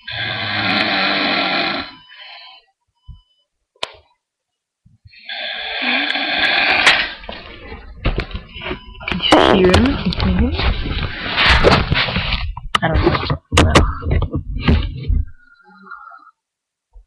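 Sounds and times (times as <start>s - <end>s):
person snoring loudly: 0.0s - 2.5s, 5.2s - 7.2s.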